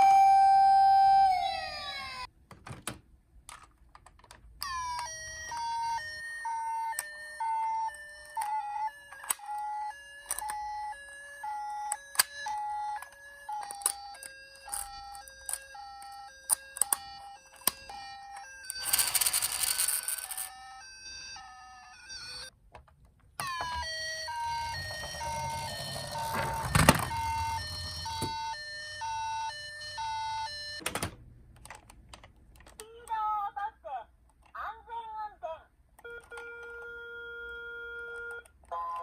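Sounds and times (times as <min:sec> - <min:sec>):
toy electronic sirens: 0:00.0 - 0:02.3, 0:04.6 - 0:22.5, 0:23.4 - 0:30.8, 0:36.0 - 0:39.0.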